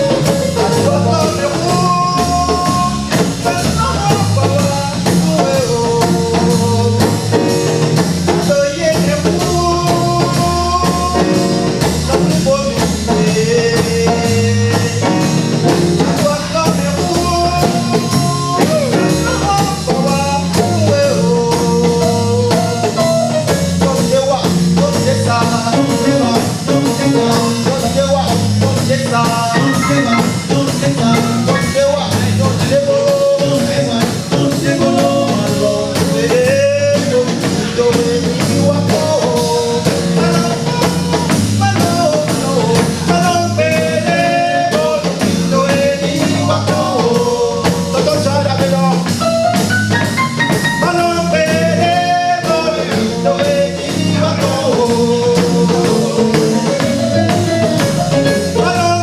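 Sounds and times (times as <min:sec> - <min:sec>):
person singing: 0:00.0 - 0:07.3, 0:08.3 - 0:15.4, 0:16.0 - 0:49.2, 0:50.8 - 0:59.0
guitar: 0:00.0 - 0:59.0
steady drum beat: 0:00.0 - 0:59.0.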